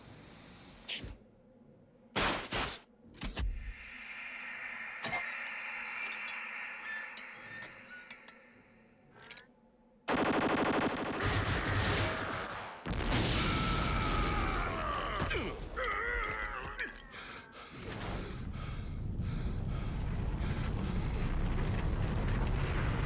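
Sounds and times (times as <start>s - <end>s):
blaster shots: 10.1s - 14.7s
loud blasts: 10.1s - 15.8s
steady rumble: 18.2s - 23.0s.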